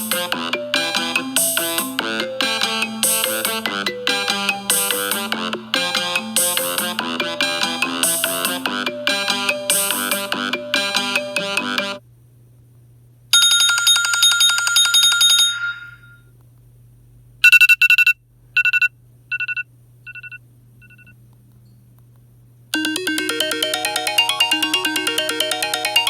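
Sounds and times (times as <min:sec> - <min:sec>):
melodic ringtone: 0:00.0 - 0:12.0, 0:22.8 - 0:26.0
rapid ringtone trill: 0:00.0 - 0:12.0, 0:22.8 - 0:26.0.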